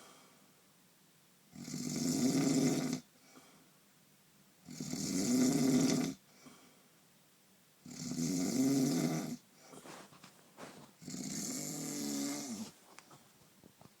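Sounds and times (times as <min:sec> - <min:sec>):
quiet breathing: 0:00.0 - 0:00.6, 0:03.1 - 0:03.9, 0:06.2 - 0:07.1, 0:09.4 - 0:13.6
person snoring: 0:11.0 - 0:12.7.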